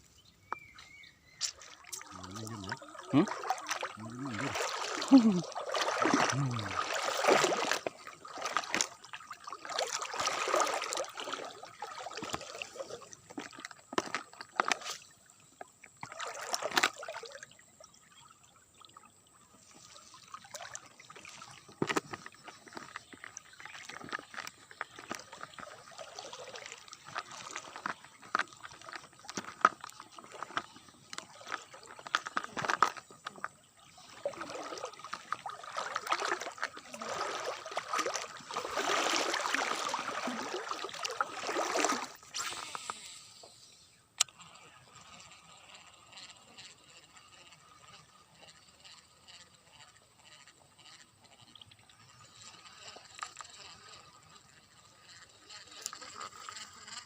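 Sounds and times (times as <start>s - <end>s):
water splashing and sloshing: 1.3s - 43.0s.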